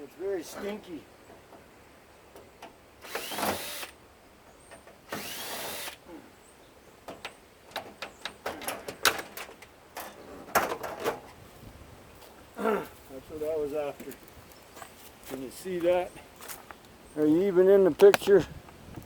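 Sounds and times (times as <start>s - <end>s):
cordless drill motor whine: 3.0s - 4.0s, 5.2s - 6.0s.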